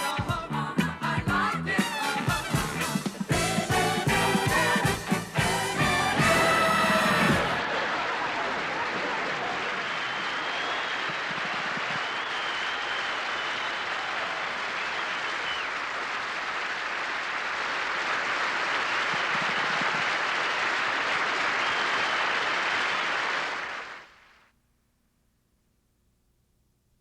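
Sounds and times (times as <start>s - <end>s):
audience applauding: 3.4s - 24.4s.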